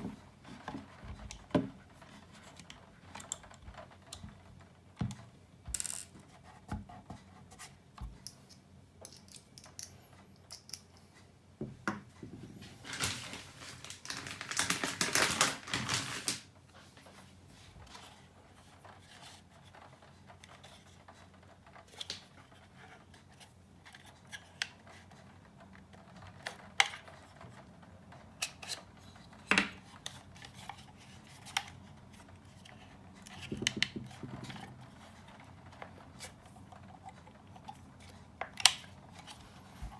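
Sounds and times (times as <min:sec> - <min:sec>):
small parts and tools clicking: 0:01.2 - 0:06.4, 0:08.2 - 0:11.2
scraping and rustling: 0:12.4 - 0:39.9.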